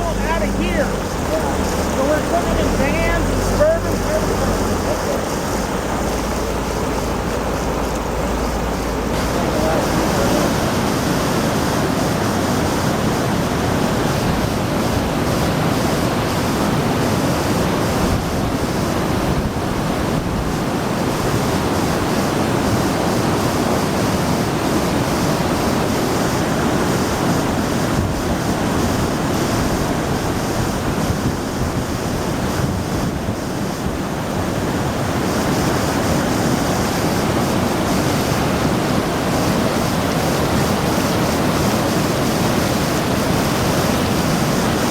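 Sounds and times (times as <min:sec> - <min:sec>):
river floodwater rushing: 0:00.0 - 0:44.9.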